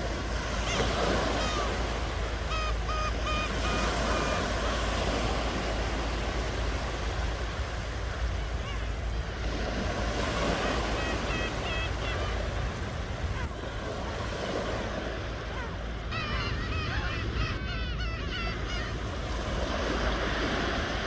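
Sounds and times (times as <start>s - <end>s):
ocean waves washing in: 0.0s - 21.0s
short high-pitched calls: 2.4s - 4.7s.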